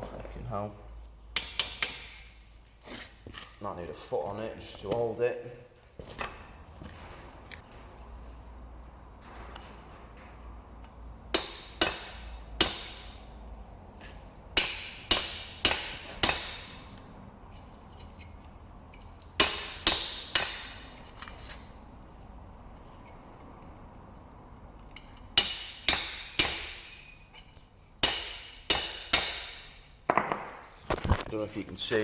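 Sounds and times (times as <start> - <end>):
hammer striking chisel on metal: 1.3 - 2.4, 11.3 - 13.4, 14.0 - 17.0, 19.4 - 21.2, 25.0 - 30.7.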